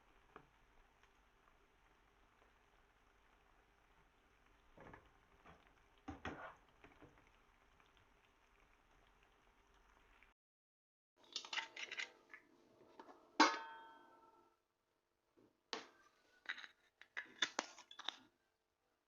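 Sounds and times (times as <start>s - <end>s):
utensils and dishes clinking: 11.2s - 12.5s.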